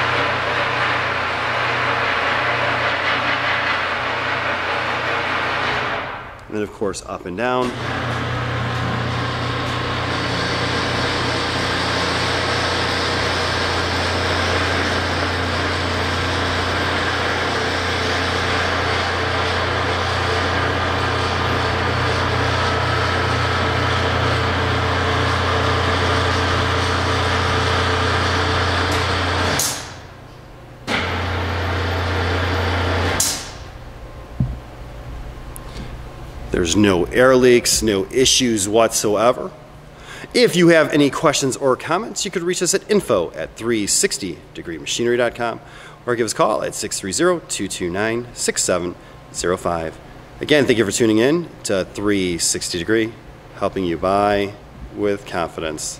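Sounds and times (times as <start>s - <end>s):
electric motor humming: 7.7s - 29.6s.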